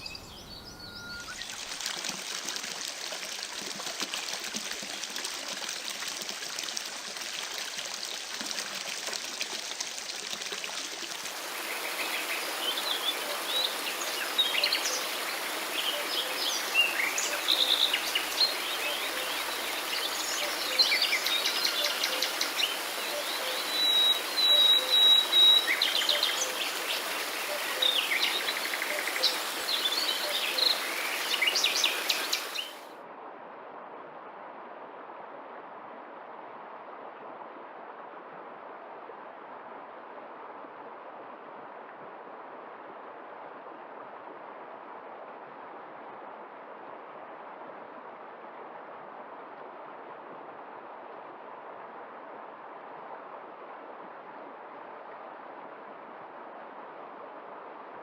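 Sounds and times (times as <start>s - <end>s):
songbirds singing: 0.0s - 1.7s, 11.4s - 32.8s
stream water rushing: 0.0s - 32.9s.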